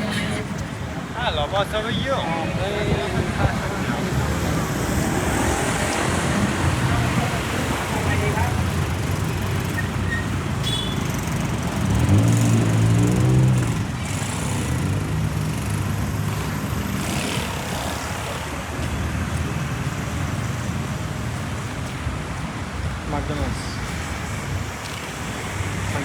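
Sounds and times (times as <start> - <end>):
street noise: 0.0 - 26.0
vehicle engine passing by: 2.3 - 18.8.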